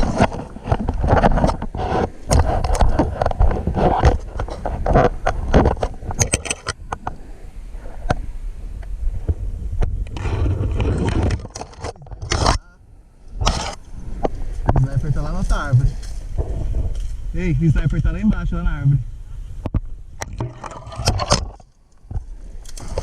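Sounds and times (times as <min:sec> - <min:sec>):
rustling and scraping footsteps: 0:00.0 - 0:06.2, 0:13.4 - 0:18.3.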